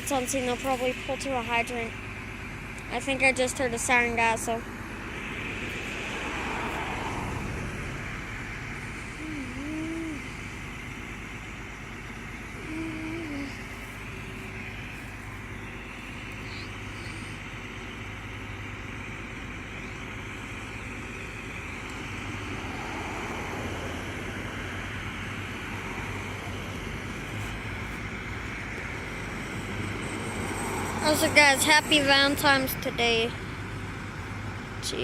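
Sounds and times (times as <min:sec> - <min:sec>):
engine idling: 0:00.0 - 0:35.0
road traffic noise: 0:00.0 - 0:35.0
vehicle passing: 0:02.8 - 0:11.4, 0:21.7 - 0:35.0.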